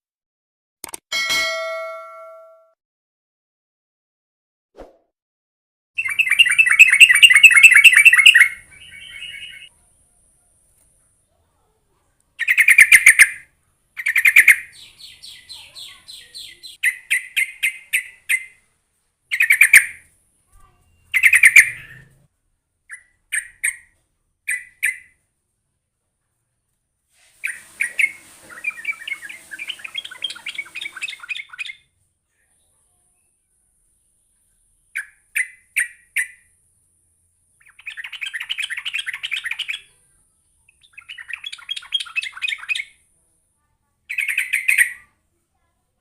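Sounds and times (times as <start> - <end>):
bird chattering: 6.0 - 9.7, 12.4 - 13.4, 14.0 - 18.6, 21.1 - 22.1, 27.4 - 31.8, 40.7 - 43.0.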